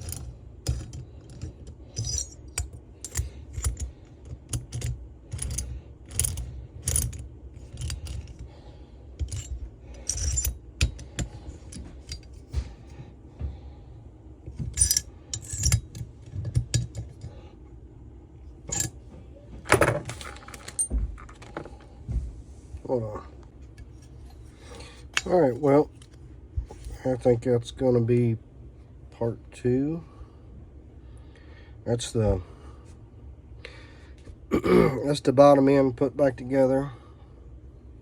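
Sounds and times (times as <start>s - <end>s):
metal parts and tools clinking: 0.0s - 8.5s, 9.2s - 12.6s, 14.5s - 17.4s, 18.7s - 19.0s, 19.6s - 21.8s, 23.8s - 27.0s.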